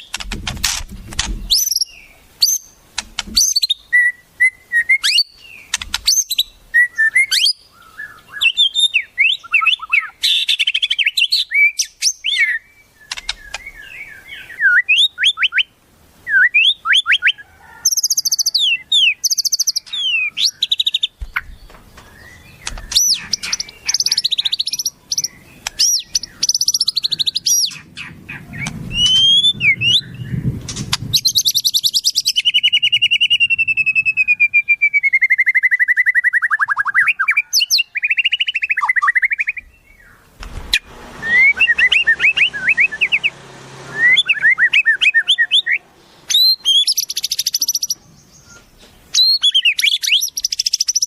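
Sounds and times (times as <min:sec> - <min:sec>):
songbirds calling and singing: 0:00.0 - 0:51.0
bird trill sliding down: 0:19.4 - 0:30.0, 0:40.3 - 0:45.5.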